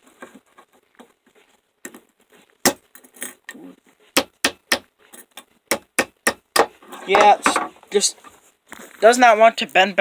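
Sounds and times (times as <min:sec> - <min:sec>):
hammer striking metal: 0:04.2 - 0:04.9, 0:05.7 - 0:06.7.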